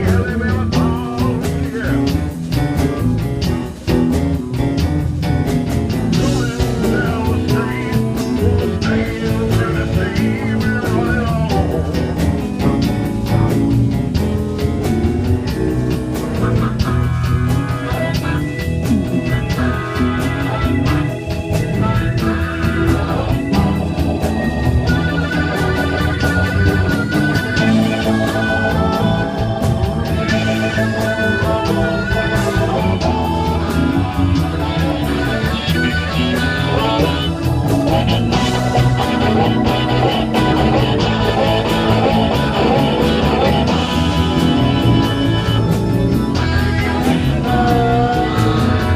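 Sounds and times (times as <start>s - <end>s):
bass guitar: 0.0s - 48.9s
guitar lines: 0.0s - 48.9s
organ lines: 0.0s - 48.9s
steady drum beat: 0.0s - 48.9s.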